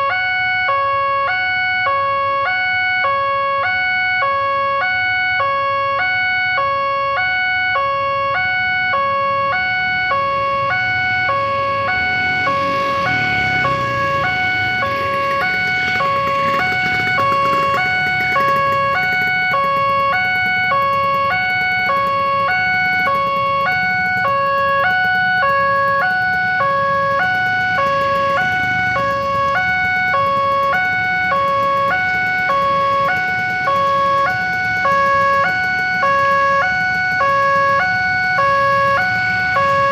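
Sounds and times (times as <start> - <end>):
level crossing two-tone siren: 0.0 - 39.9
passing vehicle rush: 9.4 - 39.9.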